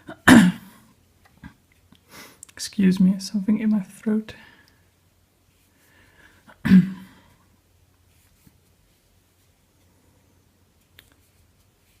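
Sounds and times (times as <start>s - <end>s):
woman coughing: 0.0s - 0.7s, 6.6s - 7.1s.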